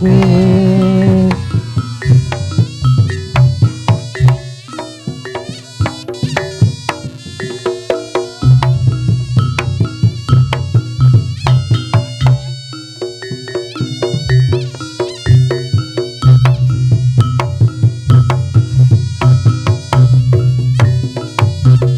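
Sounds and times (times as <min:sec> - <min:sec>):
heavy bass beat: 0:00.0 - 0:04.4
metal-keyed percussion and drums: 0:00.0 - 0:21.9.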